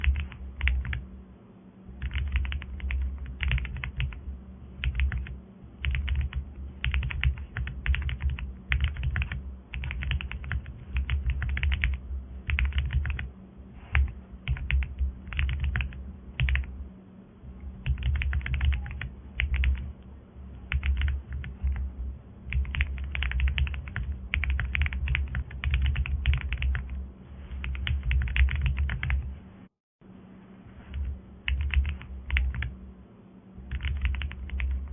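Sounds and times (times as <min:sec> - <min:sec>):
mechanical keyboard typing: 0:00.0 - 0:01.0, 0:02.0 - 0:04.2, 0:04.8 - 0:13.3, 0:13.9 - 0:16.7, 0:17.7 - 0:19.9, 0:20.6 - 0:21.9, 0:22.5 - 0:27.0, 0:27.6 - 0:29.3, 0:30.9 - 0:32.7, 0:33.7 - 0:34.9
faint low hum: 0:00.0 - 0:34.9.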